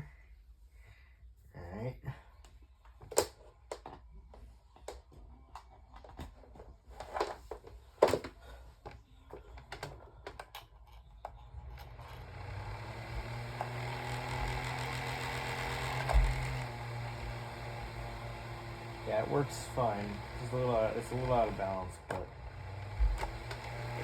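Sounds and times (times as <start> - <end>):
desk fan motor humming: 11.5 - 24.0.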